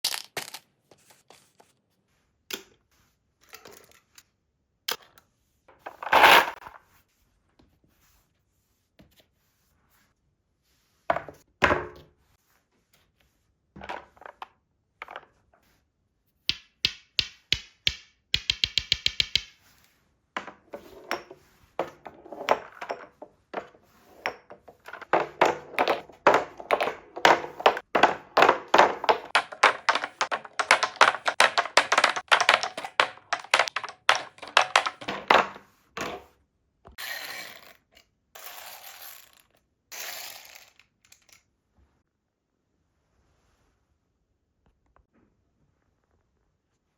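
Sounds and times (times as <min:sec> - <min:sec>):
marbles clacking on wooden track: 0:05.9 - 0:06.7, 0:16.5 - 0:19.6, 0:20.4 - 0:36.3.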